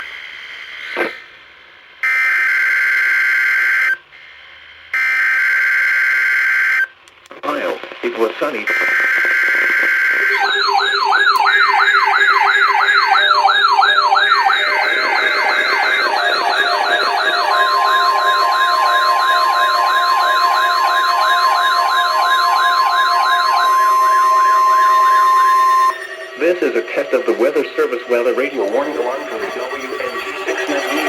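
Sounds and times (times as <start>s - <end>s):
warbling digital data bursts: 7.4s - 31.0s
alert radio siren alarm: 8.6s - 31.0s
steady warning alarm tone: 8.6s - 31.0s.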